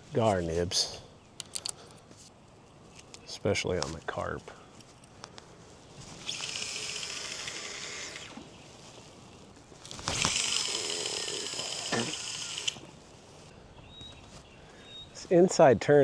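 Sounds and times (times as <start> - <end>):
high-pitched mechanical whirring: 6.2 - 8.4, 10.0 - 12.9.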